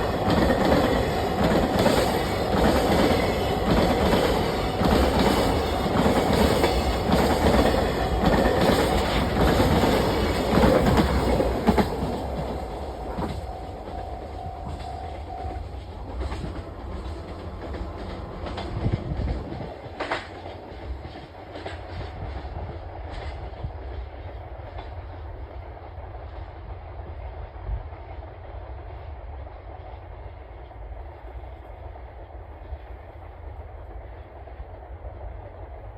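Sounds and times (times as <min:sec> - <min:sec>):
wheels clacking over rail joints: 0:00.0 - 0:22.5
train rumble: 0:00.0 - 0:35.9.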